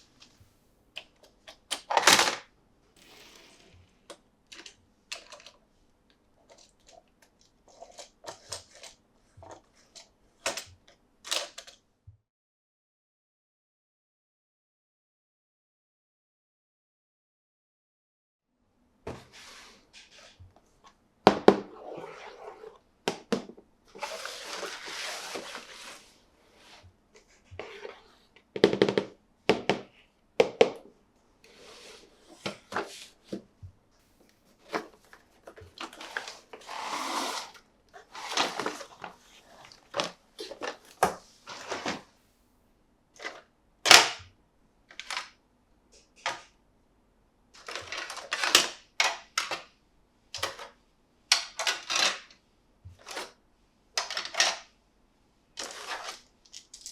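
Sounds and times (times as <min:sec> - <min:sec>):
packaging crinkly rustling: 0:03.0 - 0:05.6, 0:38.0 - 0:42.0
plastic toy pieces clicking and knocking: 0:56.4 - 0:56.9.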